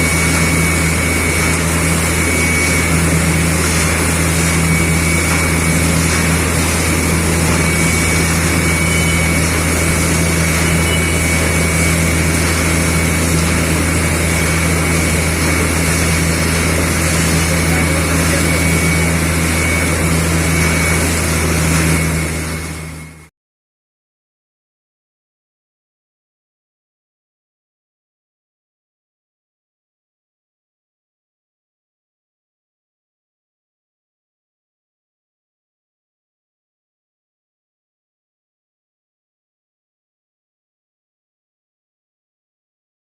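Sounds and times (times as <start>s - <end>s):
drilling machine engine drone: 0.0s - 23.3s.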